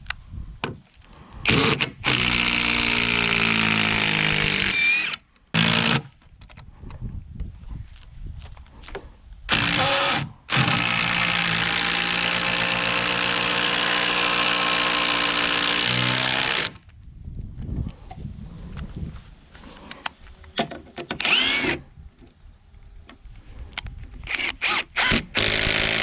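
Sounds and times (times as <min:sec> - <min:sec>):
power drill driving screw into log: 0:01.4 - 0:06.1, 0:09.5 - 0:16.8, 0:21.1 - 0:21.8, 0:24.2 - 0:26.0.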